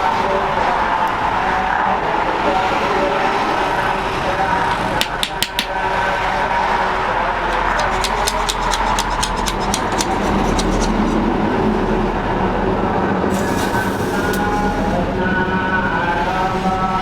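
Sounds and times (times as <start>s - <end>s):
workshop machine whirring: 7.5s - 11.3s, 13.3s - 15.4s.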